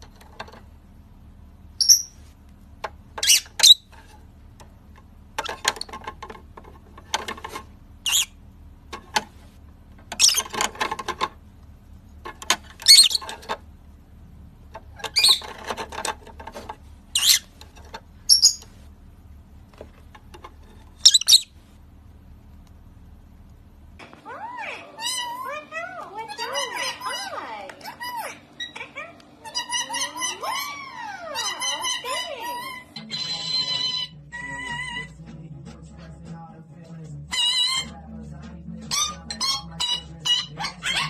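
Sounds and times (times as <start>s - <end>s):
parrot chirping and squeaking: 1.8s - 2.3s, 3.2s - 4.2s, 7.3s - 8.4s, 10.1s - 11.2s, 12.6s - 13.6s, 14.8s - 18.8s, 20.8s - 21.6s, 24.6s - 25.6s, 26.2s - 35.2s, 37.3s - 38.0s, 38.9s - 41.0s.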